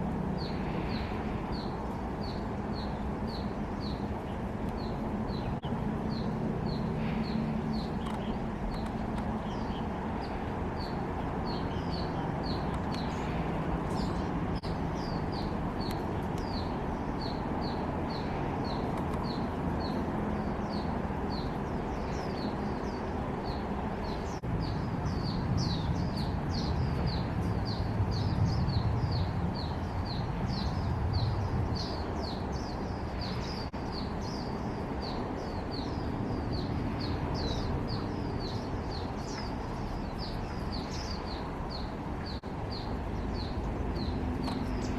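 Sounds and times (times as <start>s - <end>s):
small bird chirping: 0.4s - 44.9s.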